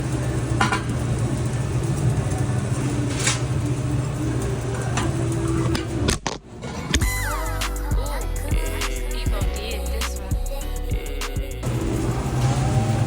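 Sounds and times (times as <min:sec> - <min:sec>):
engine droning: 0:08.2 - 0:13.0.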